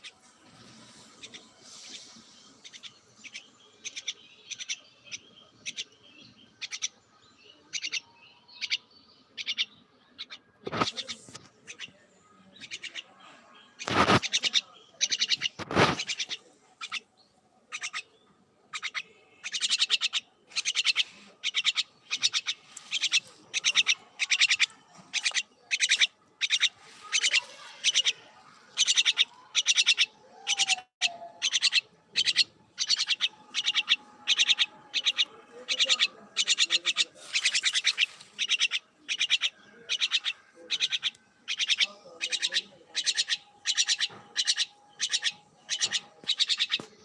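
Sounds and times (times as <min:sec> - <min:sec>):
bird trilling: 0:13.8 - 0:17.0, 0:17.7 - 0:18.1, 0:18.8 - 0:28.2, 0:28.8 - 0:46.9.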